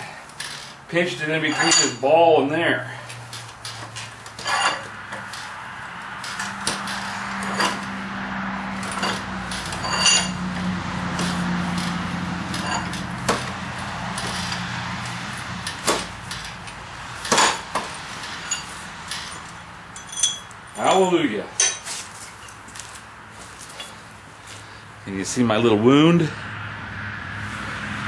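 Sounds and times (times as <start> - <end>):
vise handle clanking: 1.4 - 2.1, 3.3 - 5.5, 6.2 - 7.9, 8.8 - 22.0
vise screw threads grinding: 3.5 - 5.6, 8.8 - 10.4, 11.2 - 14.7, 15.3 - 20.6.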